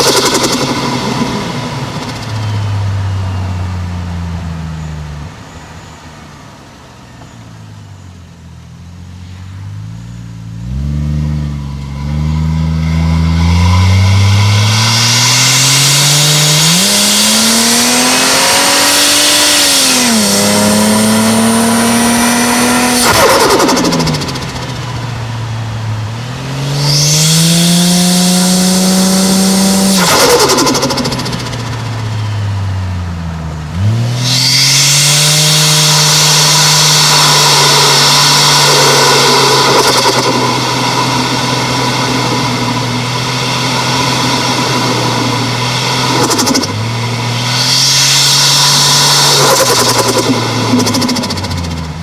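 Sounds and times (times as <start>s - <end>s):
turbo flutter: 0.0s - 3.4s, 11.1s - 32.6s, 34.1s - 52.0s
car engine accelerating: 0.0s - 52.0s
turbo hiss: 33.7s - 52.0s.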